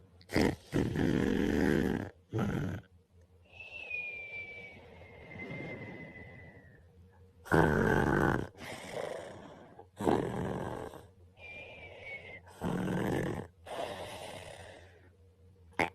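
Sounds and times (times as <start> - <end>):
man snoring: 0.3 - 2.9, 7.4 - 11.1, 12.4 - 14.9
soft breaths: 3.4 - 7.2, 8.4 - 12.8, 13.4 - 15.3.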